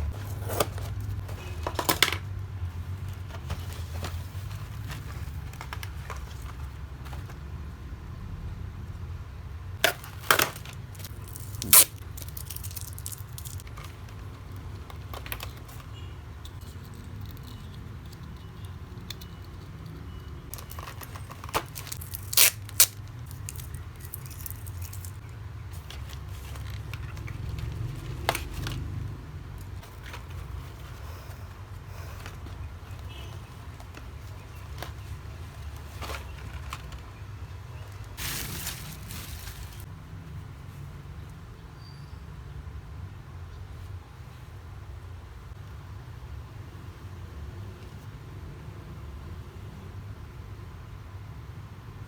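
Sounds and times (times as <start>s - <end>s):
packaging crackling and tearing: 9.8s - 15.9s, 20.5s - 28.9s, 37.8s - 39.9s.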